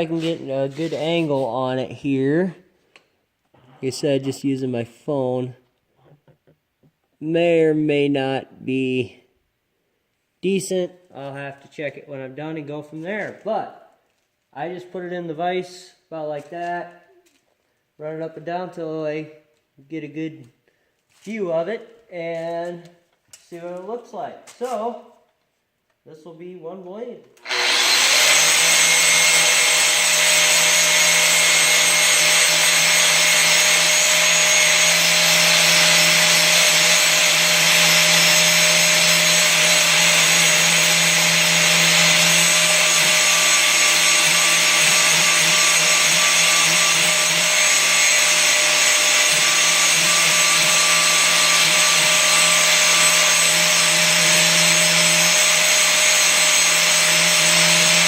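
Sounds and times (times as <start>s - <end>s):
angle grinder grinding steel: 0.0s - 1.9s, 27.4s - 58.0s.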